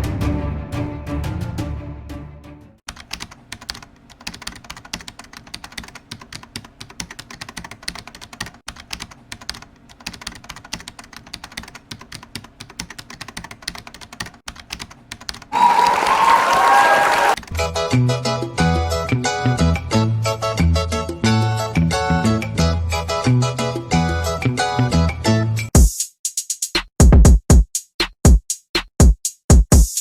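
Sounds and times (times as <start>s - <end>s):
rapid keyboard-like clicking: 2.9s - 16.0s.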